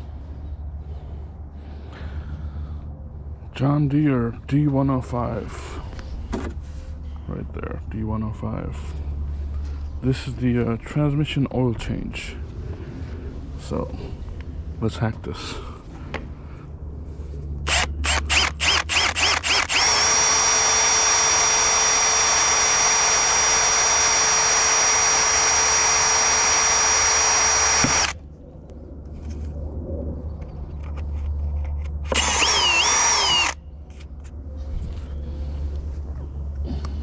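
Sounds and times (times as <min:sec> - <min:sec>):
power drill whining: 0:17.7 - 0:28.2, 0:32.1 - 0:33.6.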